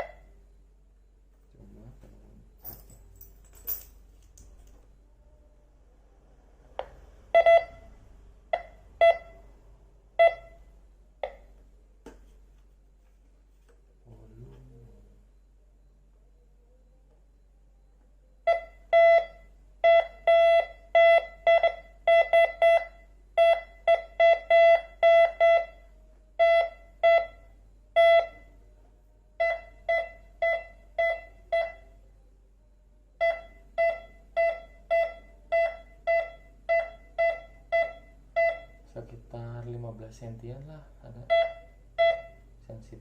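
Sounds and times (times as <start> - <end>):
metal detector beeping: 10.2 - 10.6, 41.2 - 42.4.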